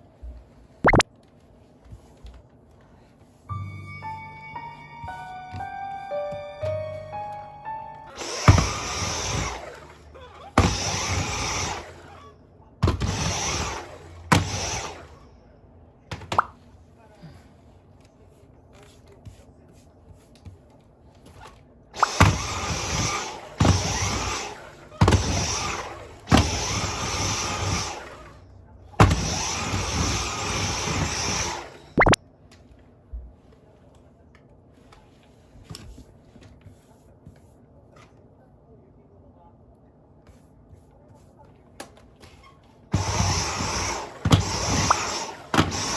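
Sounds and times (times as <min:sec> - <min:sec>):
vacuum cleaner motor whine: 0:03.5 - 0:15.3, 0:22.0 - 0:32.2, 0:42.9 - 0:45.9.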